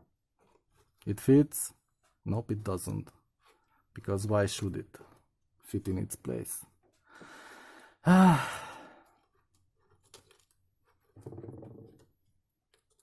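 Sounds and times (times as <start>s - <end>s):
man sighing: 8.0s - 9.0s.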